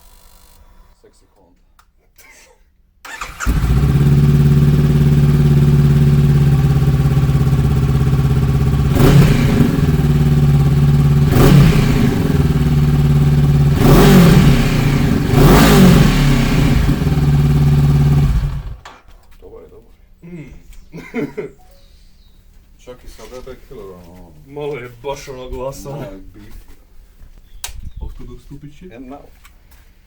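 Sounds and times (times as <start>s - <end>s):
motorcycle engine idling and revving: 3.1s - 18.8s.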